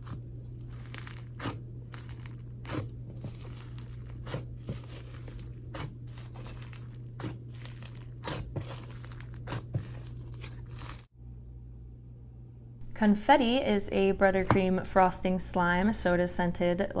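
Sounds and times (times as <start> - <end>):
slime popping and crackling: 0.0 - 11.1.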